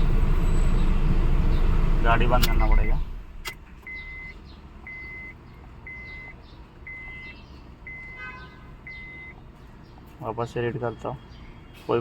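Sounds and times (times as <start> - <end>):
electronic beeper beeping: 2.6 - 3.0.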